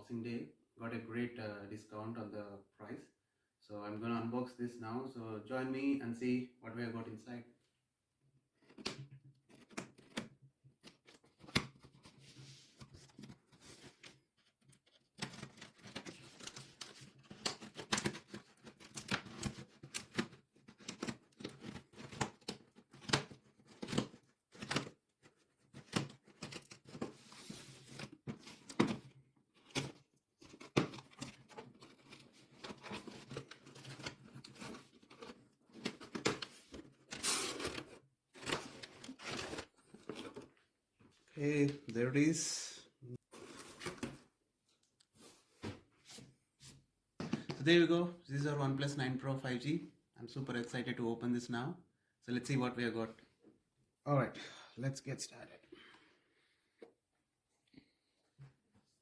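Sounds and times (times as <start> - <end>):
packaging rustling: 10.9 - 40.6.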